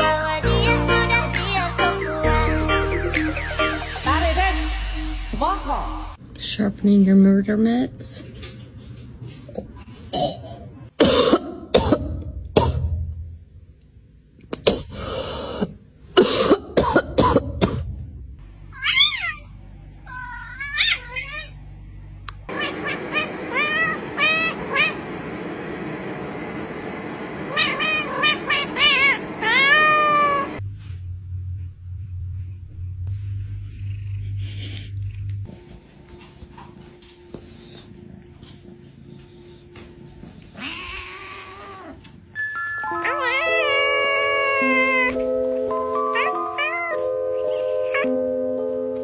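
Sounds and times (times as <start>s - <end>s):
cats meowing: 18.7s - 21.6s, 22.5s - 25.0s, 27.5s - 30.6s, 40.3s - 42.2s, 42.9s - 45.2s, 46.1s - 48.1s
short noisy bursts: 22.5s - 30.6s.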